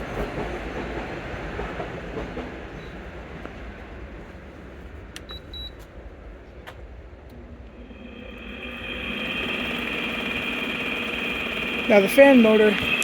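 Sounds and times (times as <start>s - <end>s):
window air conditioner humming: 7.4s - 13.0s.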